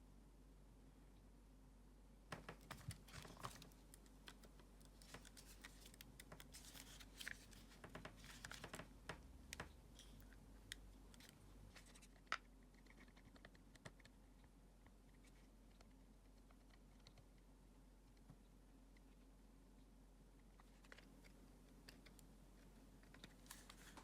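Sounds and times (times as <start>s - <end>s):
small objects clicking and rustling: 2.3s - 8.9s.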